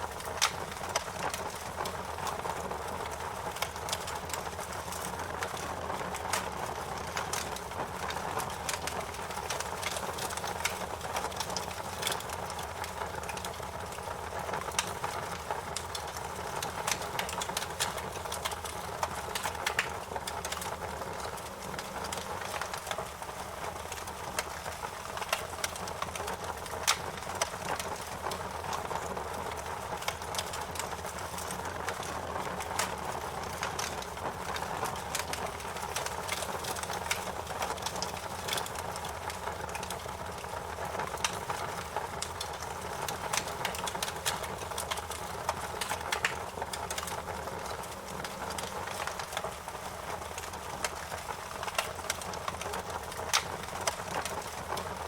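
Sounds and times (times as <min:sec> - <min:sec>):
fire pops and snaps: 0:00.0 - 0:55.0
wood fire crackling: 0:00.0 - 0:55.0.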